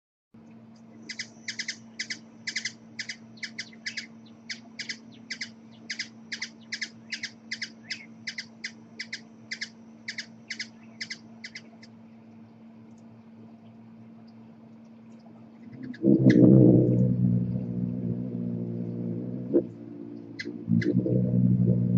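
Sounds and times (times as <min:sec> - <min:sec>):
steady low hum: 0:00.4 - 0:21.9
hummingbird chip notes: 0:15.5 - 0:21.9.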